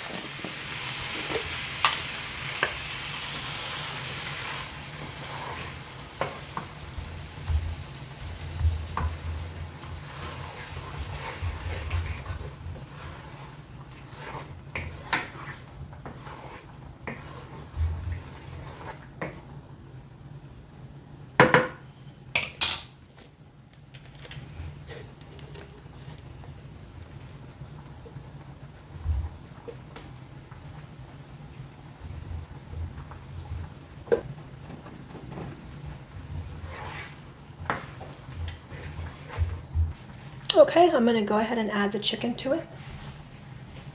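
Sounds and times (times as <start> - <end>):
utensil stirring and scraping: 0.0 - 6.7, 8.5 - 19.5, 33.0 - 40.4
utensils clinking and scraping skillet: 0.0 - 6.7
sauce sizzling: 0.0 - 11.2.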